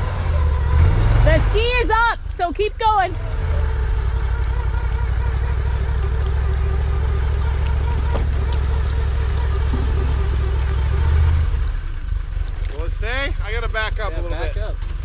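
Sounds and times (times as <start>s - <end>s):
vehicle engine droning under load: 0.0s - 15.0s
steady whine: 3.5s - 12.4s.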